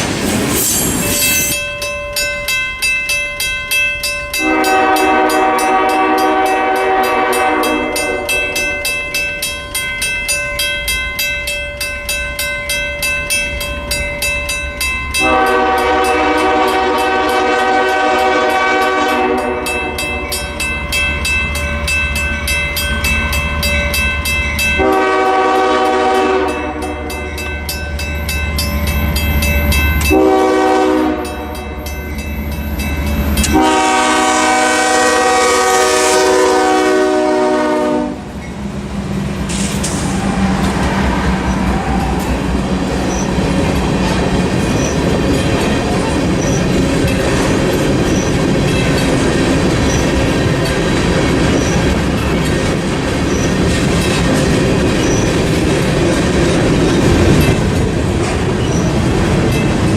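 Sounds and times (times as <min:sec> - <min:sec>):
locomotive air horn blasts: 0:04.4 - 0:08.3, 0:15.2 - 0:19.8, 0:24.8 - 0:27.1, 0:30.1 - 0:31.6, 0:33.5 - 0:38.3
locomotive engine rumble: 0:37.3 - 0:59.9
wheels clicking over rail joints: 0:39.4 - 0:59.9.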